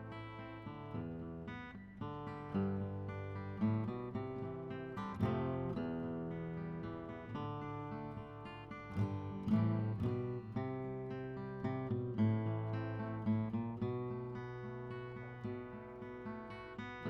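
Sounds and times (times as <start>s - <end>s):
acoustic guitar playing: 0.0s - 17.0s.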